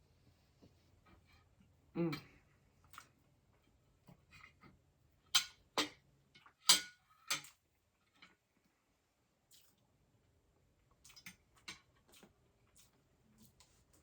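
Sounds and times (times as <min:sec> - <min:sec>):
cutlery clicks and taps: 0:06.7 - 0:07.5.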